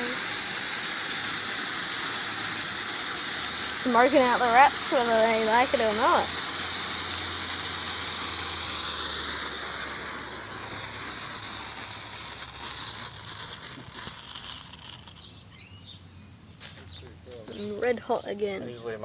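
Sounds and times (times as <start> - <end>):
firework hissing: 0.0 - 19.0
short bird chirps: 15.2 - 16.0.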